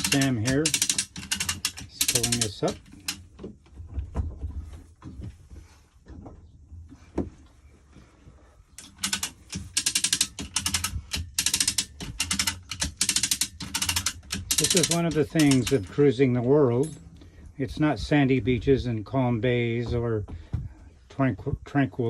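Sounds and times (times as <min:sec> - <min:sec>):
hoist ratchet clicking: 0:00.0 - 0:03.2, 0:08.8 - 0:16.0
knocks and clanks: 0:14.1 - 0:18.1.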